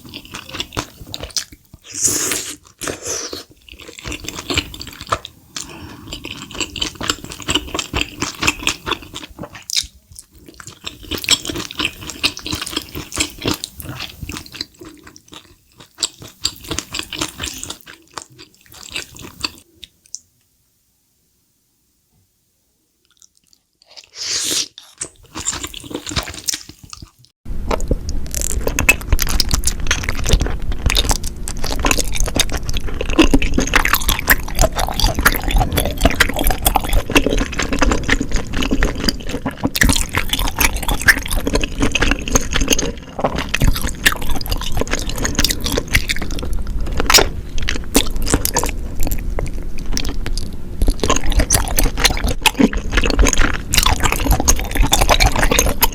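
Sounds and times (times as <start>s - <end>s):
wet chewing mouth sounds: 28.4s - 55.9s.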